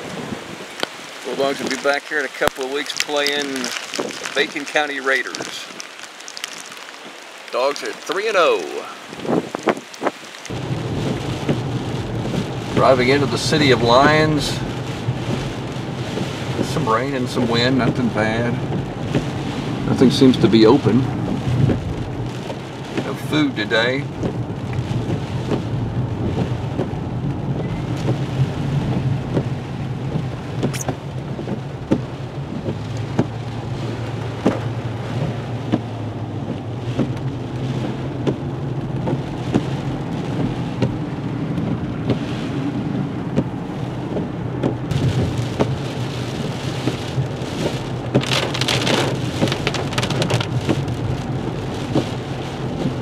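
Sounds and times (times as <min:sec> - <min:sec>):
raindrops ticking on car: 0:00.0 - 0:53.0.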